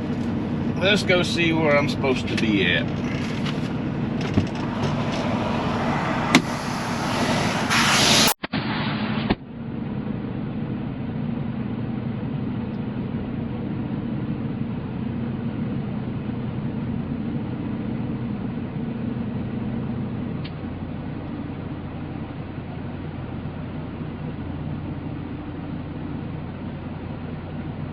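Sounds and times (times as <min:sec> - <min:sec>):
diesel truck engine idling: 0:00.0 - 0:08.2, 0:09.6 - 0:27.9
loud hiss: 0:05.8 - 0:09.0.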